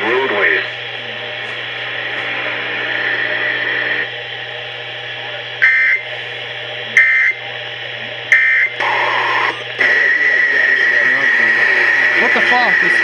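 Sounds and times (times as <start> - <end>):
digital data bursts: 8.3 - 13.0.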